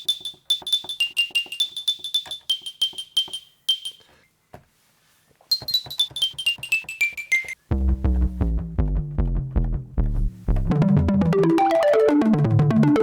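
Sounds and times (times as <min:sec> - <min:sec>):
plinking water-drop keyboard notes: 0:00.0 - 0:04.0, 0:05.5 - 0:07.6, 0:09.2 - 0:13.0.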